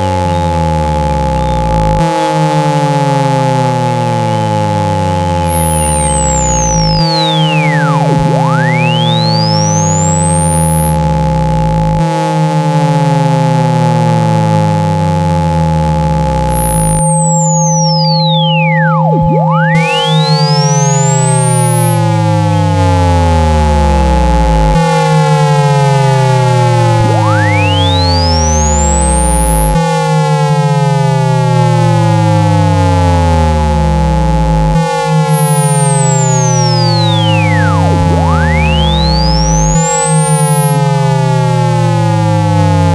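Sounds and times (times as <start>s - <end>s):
steady hums: 0.0s - 2.1s, 3.6s - 12.9s, 14.5s - 25.4s, 26.3s - 32.1s
steady mid-pitched tones: 0.0s - 13.0s, 14.2s - 42.9s
pure tone sweeping in pitch: 0.0s - 42.9s
falling synth glides: 3.6s - 12.8s, 14.7s - 22.9s
low hum: 14.6s - 24.8s.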